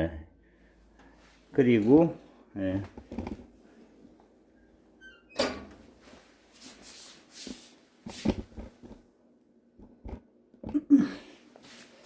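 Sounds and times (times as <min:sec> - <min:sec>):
metal stove door squeak: 0:05.0 - 0:05.8
metal door clanking: 0:05.3 - 0:05.8
rustling scrapes: 0:05.9 - 0:09.0.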